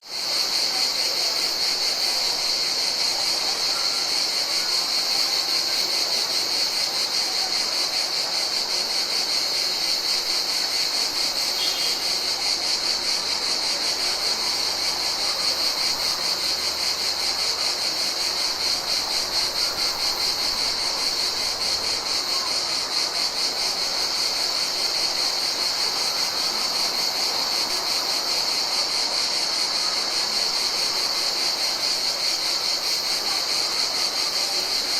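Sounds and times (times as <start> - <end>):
insects trilling: 0.0 - 34.9.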